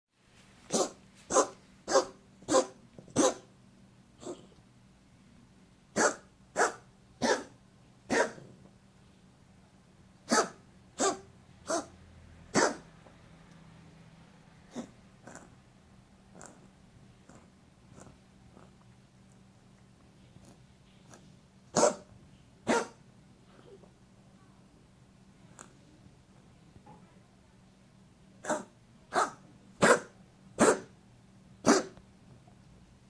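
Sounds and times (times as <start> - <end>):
dog coughing: 7.2 - 7.5, 14.7 - 15.5.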